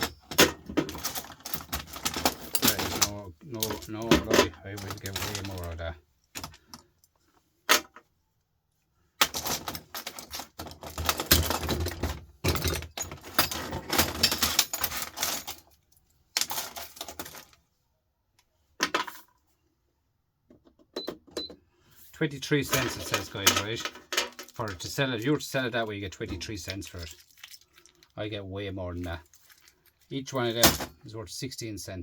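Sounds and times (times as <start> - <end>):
scrap metal parts clattering: 0.0 - 6.8, 9.2 - 17.6, 22.5 - 28.1, 29.0 - 31.0.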